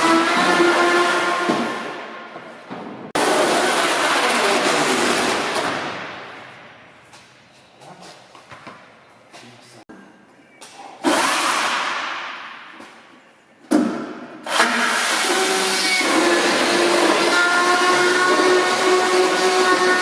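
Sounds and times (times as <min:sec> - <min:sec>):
power saw whining: 0:14.4 - 0:20.0.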